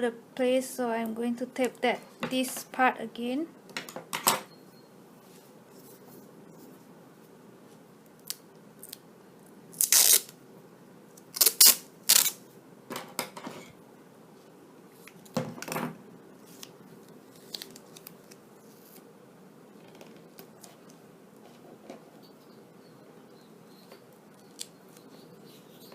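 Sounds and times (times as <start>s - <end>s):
tape ripping off roll: 9.8s - 10.4s, 11.3s - 12.4s.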